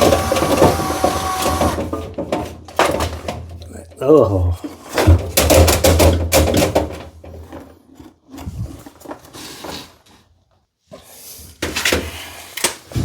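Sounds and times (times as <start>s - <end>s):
brush rods clattering in vent duct: 0.0s - 3.7s.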